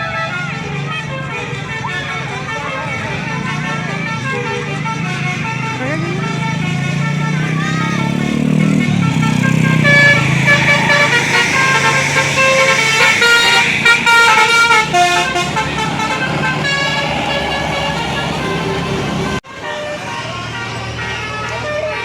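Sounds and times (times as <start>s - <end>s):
bus horn playing melody: 0.0s - 22.0s
low engine drone: 8.8s - 19.4s.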